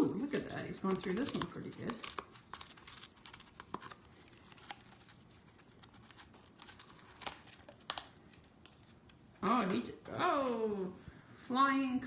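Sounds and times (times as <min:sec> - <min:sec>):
cardboard crackling and tearing: 0:00.0 - 0:09.1.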